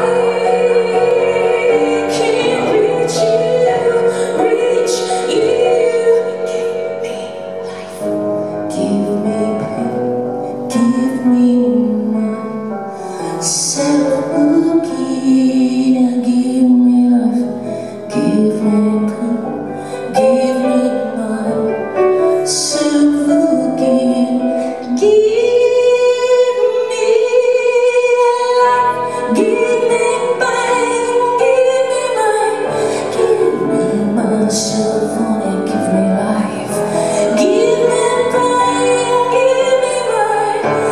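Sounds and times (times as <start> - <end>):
woman singing long notes: 0.0 - 8.0
woman singing long held notes: 0.0 - 8.1, 22.4 - 40.9
instrumental accompaniment: 0.0 - 40.9.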